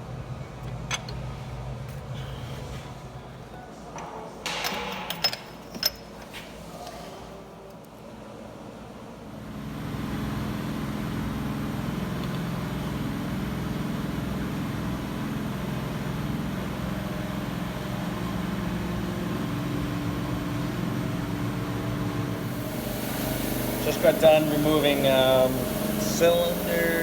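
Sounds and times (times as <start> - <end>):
machine humming: 17.3 - 27.0.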